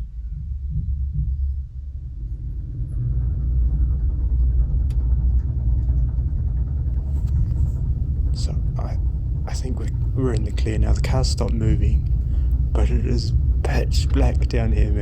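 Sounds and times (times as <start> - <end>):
car park machinery rumbling: 6.9 - 15.0.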